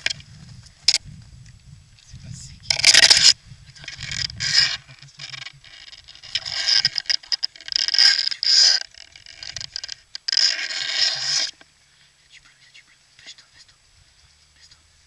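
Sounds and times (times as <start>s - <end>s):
scraping and rustling: 2.7s - 11.7s.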